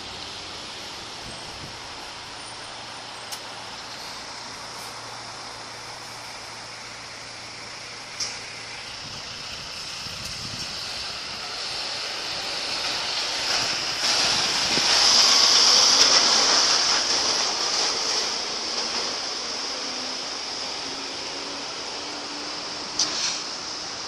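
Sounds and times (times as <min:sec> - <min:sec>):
wind gust rushing: 0:09.0 - 0:17.7.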